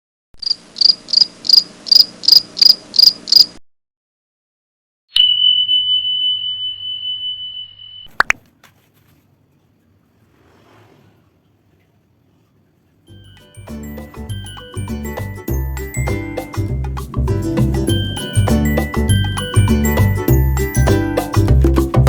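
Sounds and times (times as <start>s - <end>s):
steady high ringing tone: 5.2s - 8.2s, 13.1s - 16.8s, 17.9s - 21.0s.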